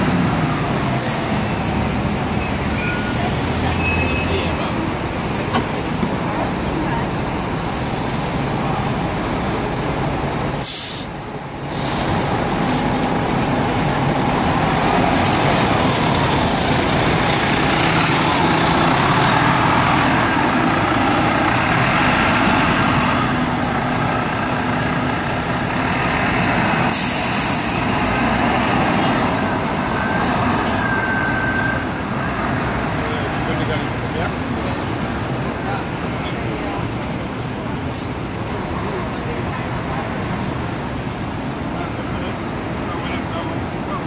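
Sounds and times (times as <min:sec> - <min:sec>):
traffic engines and road noise: 0:00.0 - 0:44.0
brief squeal: 0:02.4 - 0:03.2
sharp hiss: 0:10.6 - 0:11.1, 0:11.7 - 0:12.9.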